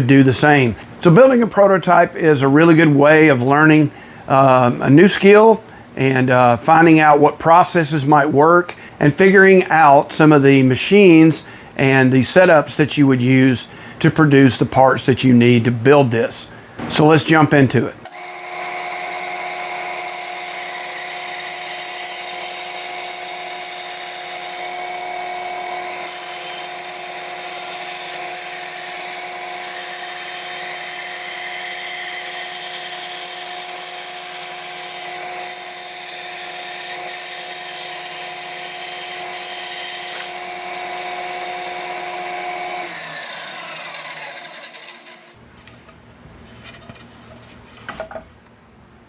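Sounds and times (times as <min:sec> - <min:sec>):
power tool motor whining: 0:18.1 - 0:45.4.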